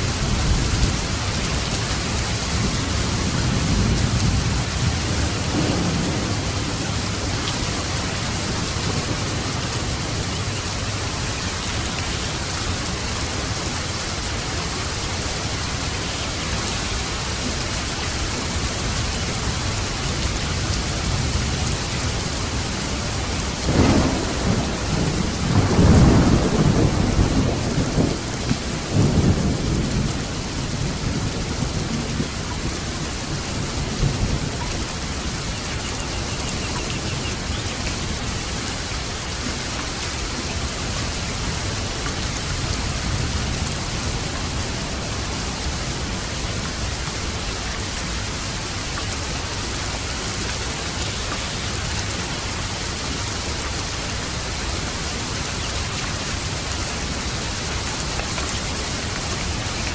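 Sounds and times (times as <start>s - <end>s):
heavy rain: 0.0s - 59.9s
thunder rolling: 2.5s - 10.3s, 23.4s - 32.3s.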